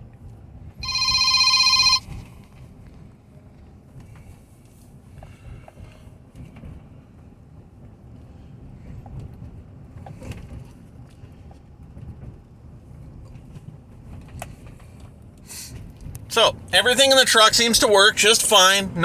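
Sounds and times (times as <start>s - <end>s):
car engine idling: 16.2s - 19.0s.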